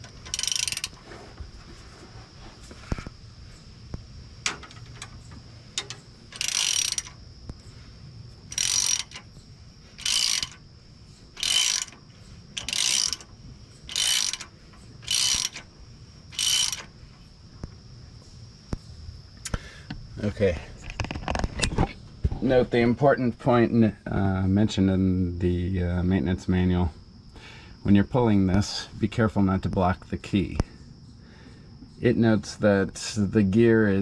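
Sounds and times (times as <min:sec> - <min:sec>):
ratchet wrench clicking: 0:00.0 - 0:01.0, 0:04.4 - 0:07.2, 0:08.5 - 0:09.4, 0:10.0 - 0:10.6, 0:11.3 - 0:15.7, 0:16.3 - 0:17.0.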